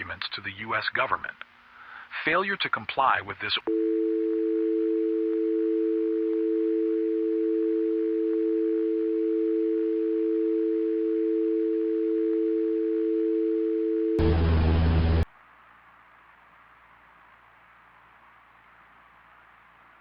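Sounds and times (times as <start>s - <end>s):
telephone dial tone: 3.7s - 14.2s
buzzing static: 14.1s - 15.2s.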